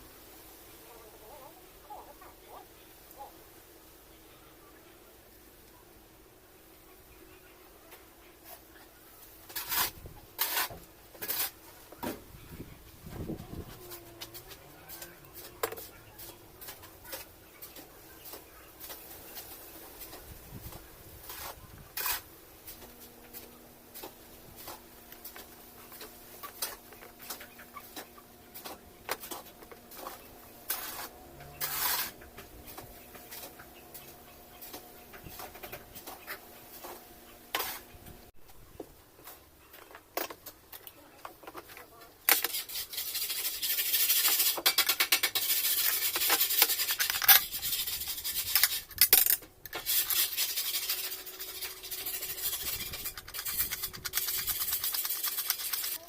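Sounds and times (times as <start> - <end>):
loud rasping noise: 49.8 - 56.0.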